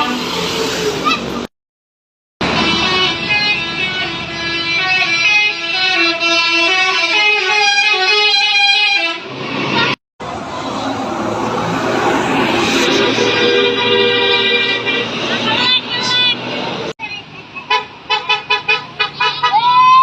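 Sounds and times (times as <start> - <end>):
vehicle noise: 0.0 - 1.5, 2.4 - 20.0
bus horn playing a tune: 2.4 - 10.0, 12.8 - 16.3, 17.6 - 19.8.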